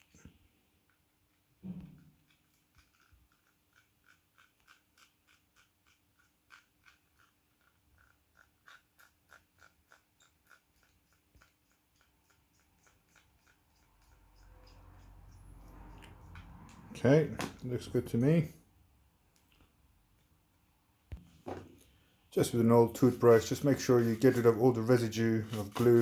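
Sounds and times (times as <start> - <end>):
thump: 1.6 - 2.1, 21.1 - 21.7
screwdriver scraping ticks: 2.7 - 16.9.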